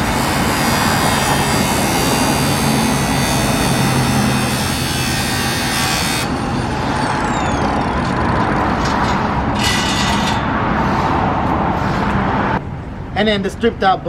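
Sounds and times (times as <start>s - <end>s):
angle grinder cutting metal: 0.0s - 10.5s
angle grinder whining: 0.0s - 10.5s.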